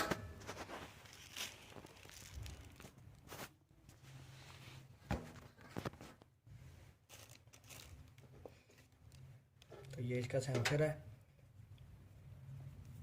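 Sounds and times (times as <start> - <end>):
packing material rustling: 0.3 - 10.0.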